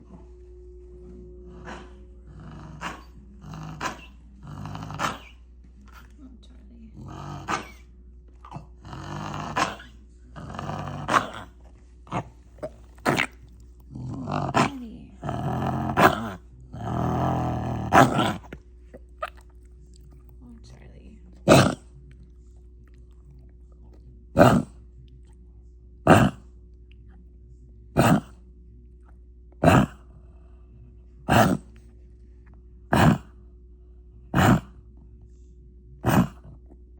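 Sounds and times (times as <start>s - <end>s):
dog coughing: 2.7s - 6.0s, 7.2s - 7.9s, 8.5s - 10.0s, 10.7s - 13.5s, 14.3s - 19.5s, 21.4s - 21.9s, 24.4s - 24.7s, 28.0s - 28.3s, 29.6s - 30.0s, 31.3s - 31.7s, 32.9s - 33.3s, 34.4s - 34.7s, 36.0s - 36.5s.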